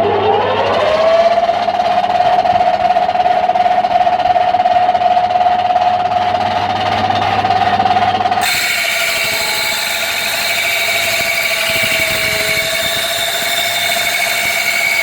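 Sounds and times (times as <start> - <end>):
lathe running: 6.1 - 15.0.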